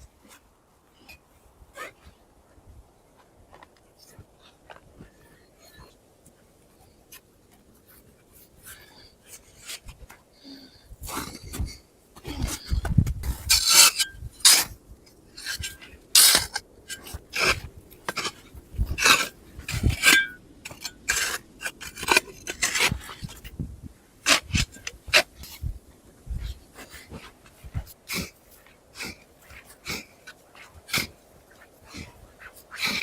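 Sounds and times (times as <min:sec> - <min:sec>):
scraping and rubbing strokes: 0:11.1 - 0:23.5.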